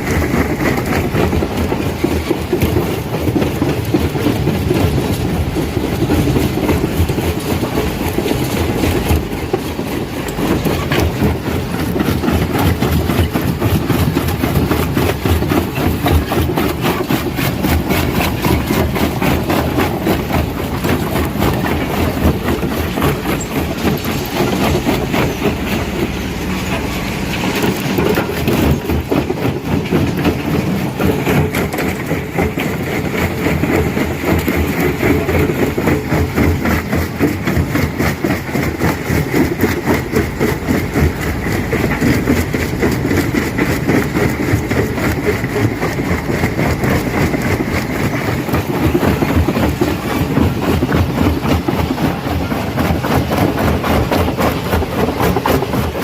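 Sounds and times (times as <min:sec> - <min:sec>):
rock crusher rumbling: 0:00.0 - 0:56.0
rock clattering and knocking: 0:00.1 - 0:56.0.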